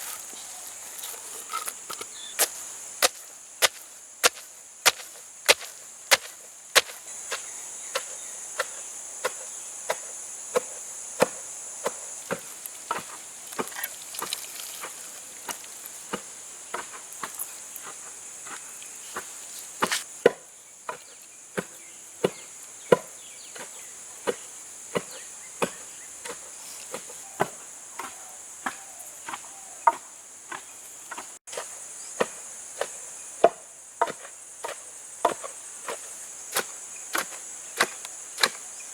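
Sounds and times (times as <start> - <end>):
insects droning: 0.0 - 38.9
knife chopping on wooden board: 1.1 - 7.0.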